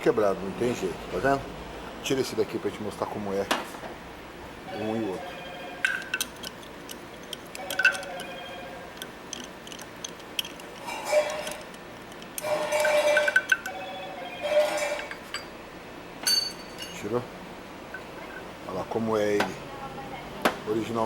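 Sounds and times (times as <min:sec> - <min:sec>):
metal tools clinking: 0:05.8 - 0:08.4, 0:09.0 - 0:13.8, 0:14.4 - 0:15.5, 0:16.2 - 0:17.1
metal rasping: 0:05.9 - 0:13.7, 0:14.4 - 0:15.5.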